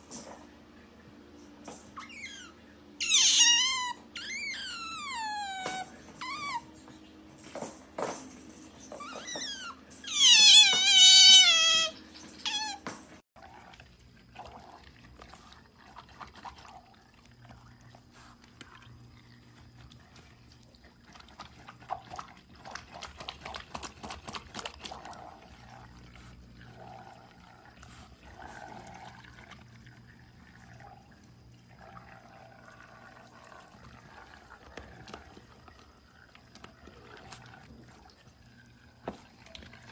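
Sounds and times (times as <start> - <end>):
otter squealing calls: 2.0 - 5.6
water sounds: 13.4 - 39.9.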